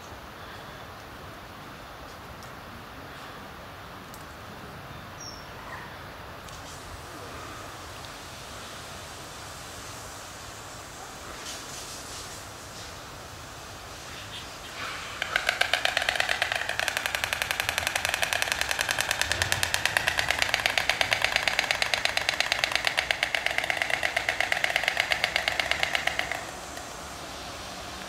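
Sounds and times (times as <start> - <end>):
storks clattering bills: 14.4 - 28.0.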